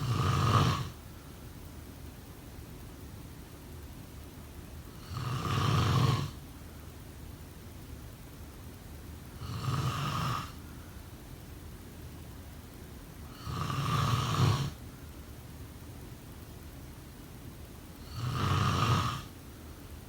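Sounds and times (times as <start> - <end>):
person snoring: 0.0 - 1.0, 5.0 - 6.4, 9.4 - 10.6, 13.3 - 14.8, 18.1 - 19.3.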